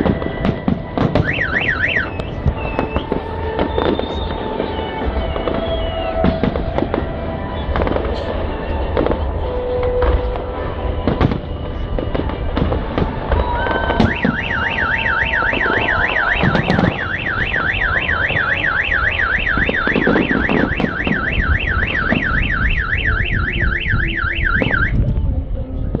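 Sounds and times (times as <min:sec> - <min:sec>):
fireworks banging and crackling: 0:00.0 - 0:25.0
car alarm siren warbling: 0:01.1 - 0:07.0, 0:12.2 - 0:25.0.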